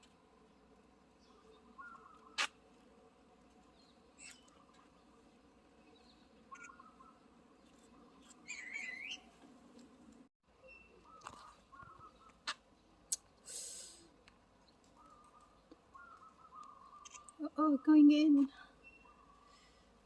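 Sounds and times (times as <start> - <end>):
bird chirps and calls: 1.7 - 2.5, 6.0 - 7.2, 8.4 - 9.3, 10.6 - 12.6, 15.0 - 19.5.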